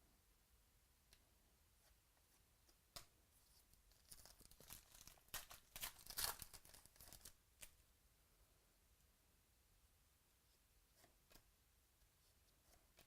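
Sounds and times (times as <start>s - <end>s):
wrapper tearing and crinkling: 4.0s - 7.4s.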